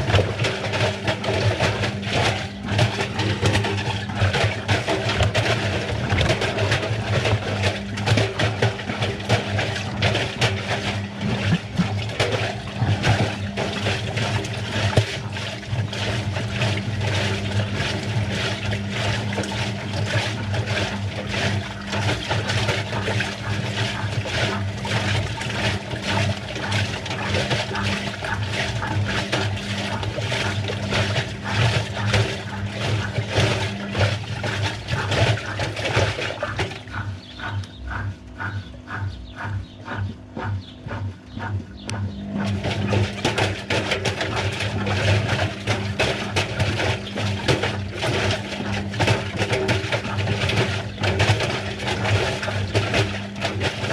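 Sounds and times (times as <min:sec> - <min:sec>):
washing machine motor hum: 0:00.0 - 0:53.9
water sloshing in drum: 0:00.0 - 0:53.9.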